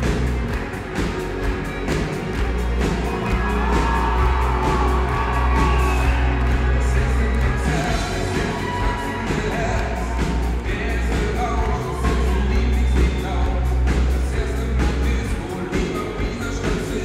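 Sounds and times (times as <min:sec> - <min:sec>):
rock band playing: 0:00.0 - 0:17.0
steady drum beat: 0:00.0 - 0:17.0
crowd whooping: 0:02.7 - 0:13.5.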